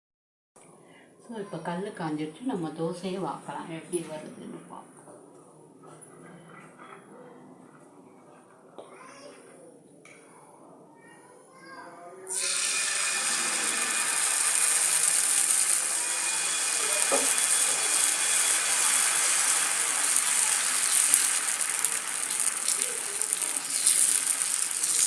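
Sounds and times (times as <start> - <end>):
batter sizzling on a griddle: 12.3 - 25.0.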